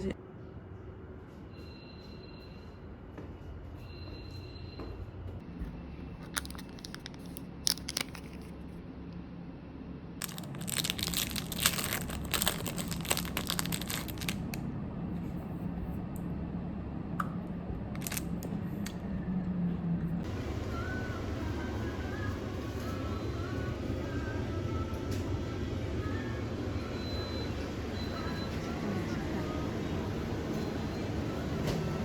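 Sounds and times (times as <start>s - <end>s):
low steady hum: 5.3s - 32.0s
crinkling and rustling: 6.2s - 8.6s, 10.2s - 14.6s, 18.0s - 18.5s.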